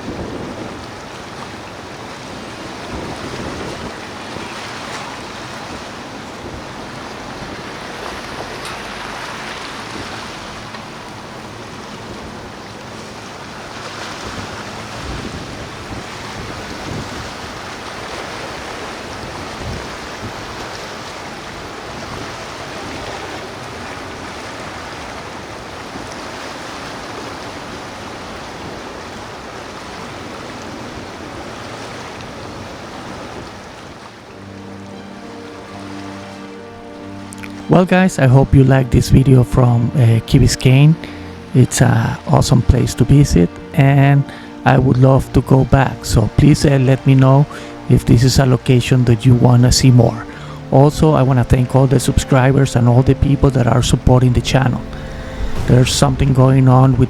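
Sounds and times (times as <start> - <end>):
wind buffeting microphone: 0.0 - 34.3, 53.1 - 57.0
waves rushing: 0.0 - 57.0
wind rushing: 53.0 - 57.0.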